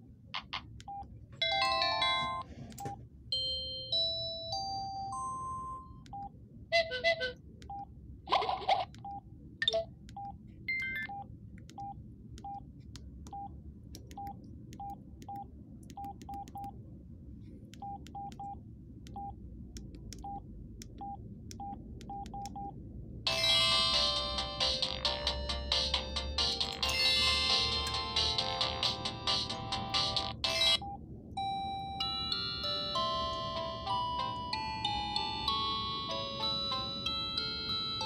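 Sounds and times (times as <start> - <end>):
ringtone melody: 1.4 - 2.5, 3.4 - 6.0, 23.3 - 30.8, 31.4 - 38.0
phone keypad beeps: 9.0 - 12.6, 14.1 - 16.7, 17.8 - 19.3, 21.0 - 22.7.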